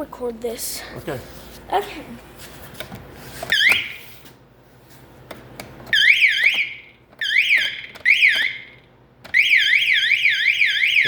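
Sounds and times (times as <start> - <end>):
fire alarm warbling tone: 5.9 - 11.0.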